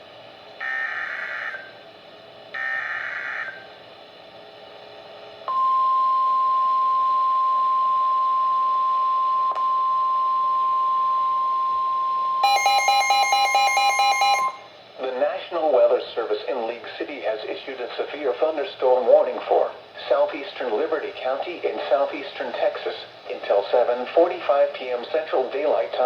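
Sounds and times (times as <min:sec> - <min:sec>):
steady single-pitch alarm tone: 0:00.6 - 0:01.8, 0:02.6 - 0:03.8, 0:05.5 - 0:14.8.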